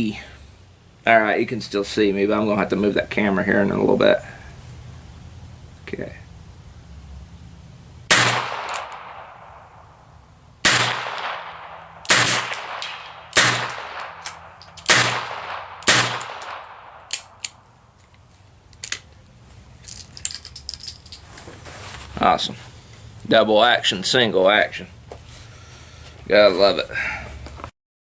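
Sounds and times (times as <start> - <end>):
revolver shots: 10.6 - 17.0
metallic clicks and clinks: 14.2 - 14.9, 17.1 - 19.2, 19.8 - 21.5.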